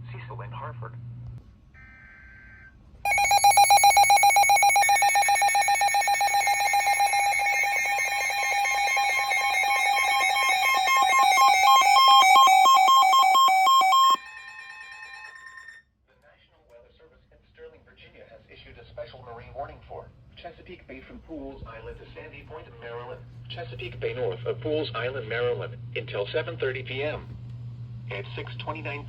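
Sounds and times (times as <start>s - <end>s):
pulsing electronic alert tone: 3.1s - 15.8s
steady higher tone: 3.1s - 15.8s.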